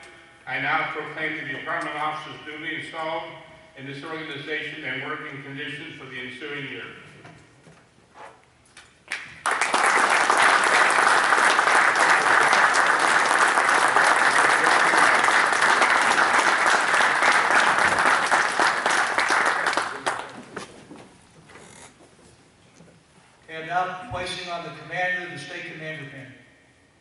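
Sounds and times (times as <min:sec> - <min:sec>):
audience applauding: 0:09.1 - 0:20.6.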